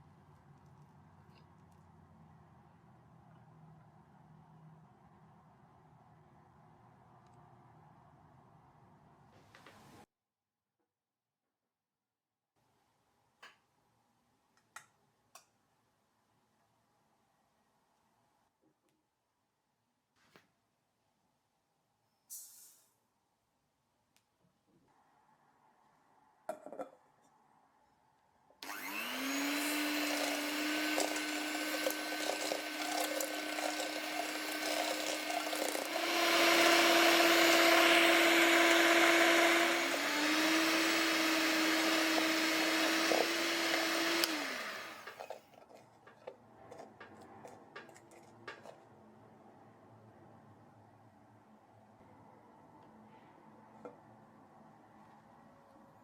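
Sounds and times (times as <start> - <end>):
electric kitchen mixer running: 28.6 - 45.4.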